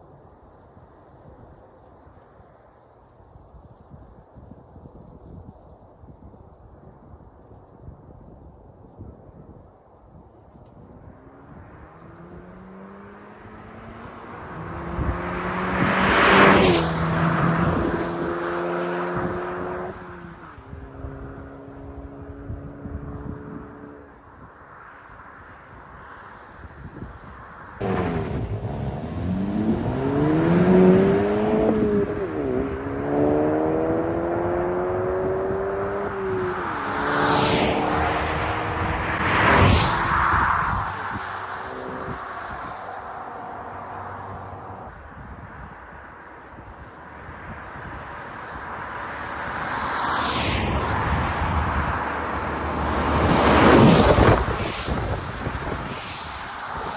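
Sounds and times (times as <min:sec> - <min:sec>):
car exhaust accelerating: 0:27.8 - 0:35.9, 0:50.6 - 0:56.0.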